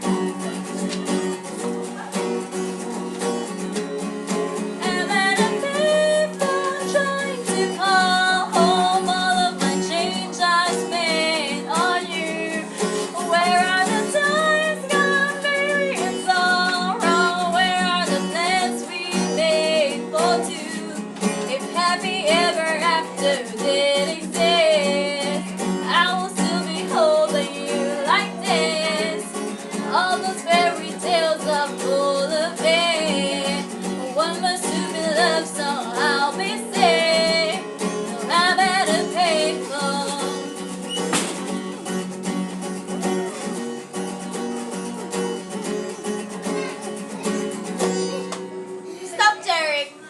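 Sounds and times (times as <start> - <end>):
guitar playing chords: 0.0 - 50.0
person singing: 4.7 - 40.6.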